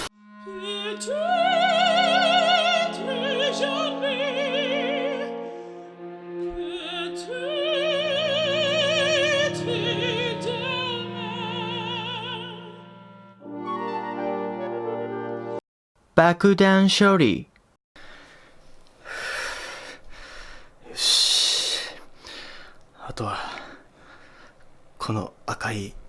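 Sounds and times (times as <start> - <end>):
operatic singing: 0.0 - 13.6.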